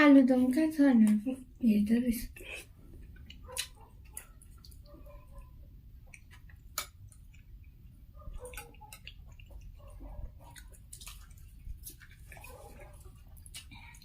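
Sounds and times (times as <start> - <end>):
chewing and wet mouth sounds: 2.2 - 14.0.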